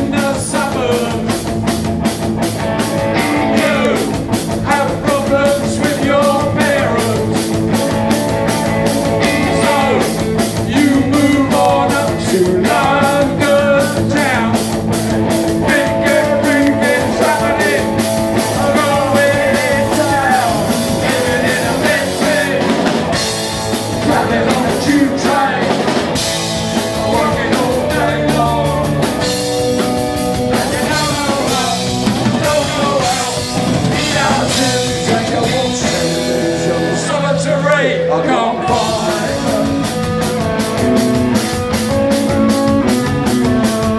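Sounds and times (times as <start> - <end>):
drumbeat: 0.0 - 36.6, 38.6 - 43.9
electric guitars: 0.0 - 43.9
person singing: 3.0 - 7.6, 9.0 - 14.7, 15.5 - 23.1, 23.9 - 26.2, 26.8 - 29.4, 30.5 - 40.5.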